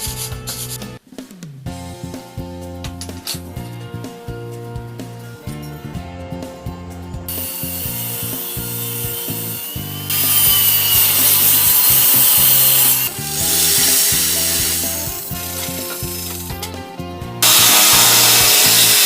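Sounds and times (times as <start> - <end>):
background music: 0.0 - 19.0
power tool working wood: 7.3 - 16.7, 17.4 - 19.0.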